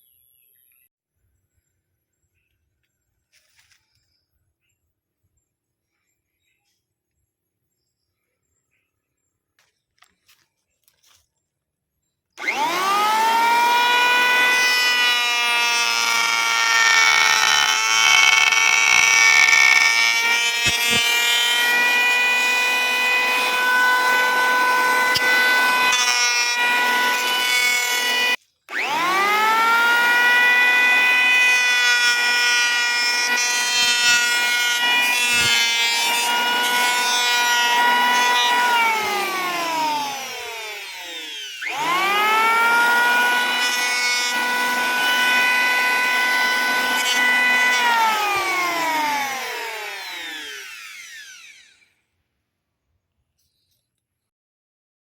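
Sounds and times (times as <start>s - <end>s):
power tool cutting wood: 12.4s - 52.0s.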